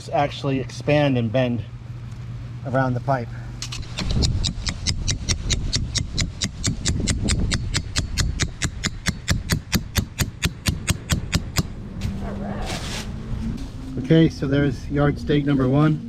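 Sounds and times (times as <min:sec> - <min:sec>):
hammer striking metal stake: 0:03.8 - 0:11.7.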